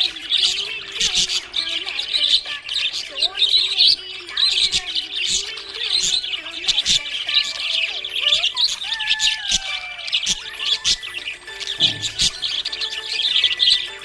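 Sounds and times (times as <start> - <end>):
budgerigars chirping and warbling: 0.0 - 14.0.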